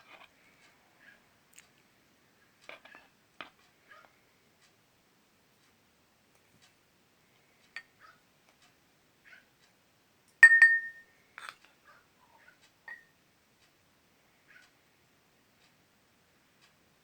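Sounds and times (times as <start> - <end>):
spoon clinking against a dish: 10.4 - 11.7.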